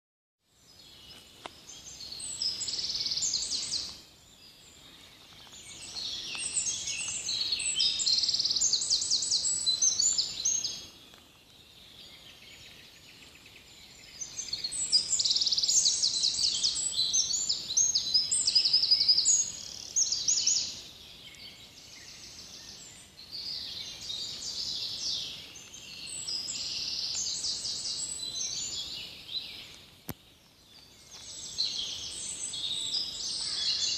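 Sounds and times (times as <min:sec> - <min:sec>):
songbirds singing: 0:00.4 - 0:33.9.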